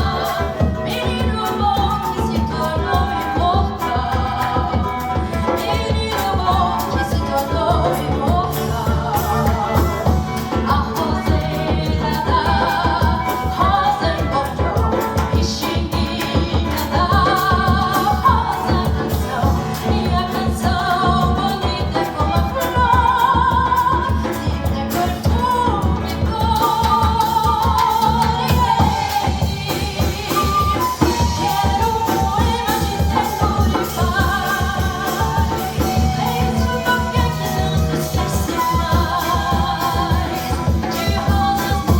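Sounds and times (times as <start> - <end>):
flute: 0.0 - 41.9
guitar: 0.0 - 41.9
hand percussion beat: 0.0 - 41.9
woman singing: 0.0 - 41.9.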